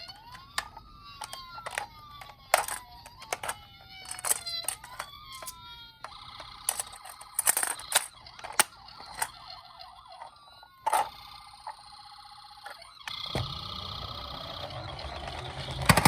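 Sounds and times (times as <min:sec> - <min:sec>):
plastic clicks and clacks: 0:00.0 - 0:09.4, 0:10.2 - 0:11.2, 0:15.8 - 0:16.0
toy electronic siren: 0:00.0 - 0:16.0.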